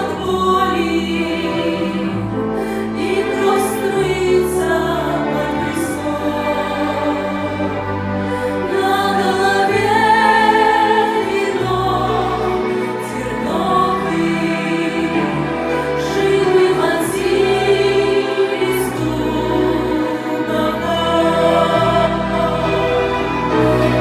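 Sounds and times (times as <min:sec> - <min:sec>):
choir singing held chords: 0:00.0 - 0:24.0.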